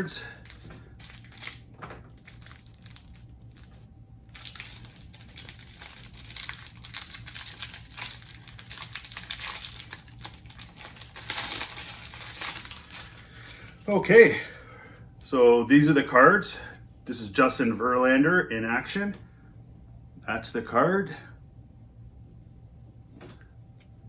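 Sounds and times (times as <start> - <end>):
card pack wrapper crinkling: 0.3 - 14.0.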